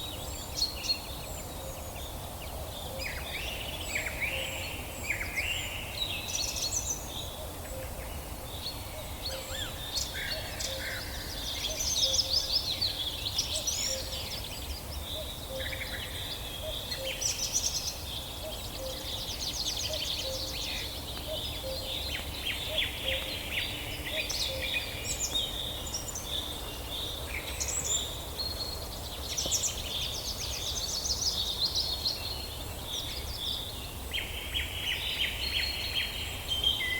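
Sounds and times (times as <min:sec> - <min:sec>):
songbirds singing and calling: 0:00.0 - 0:36.9.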